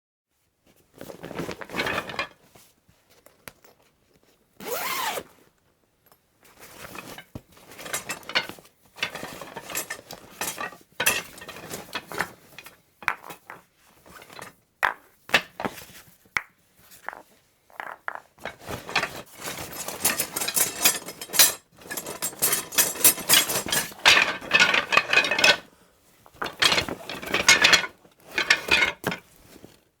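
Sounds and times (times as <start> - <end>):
rustling of a bag: 0.6 - 5.7, 28.0 - 30.0
knocks and clinks of gear: 17.8 - 25.6.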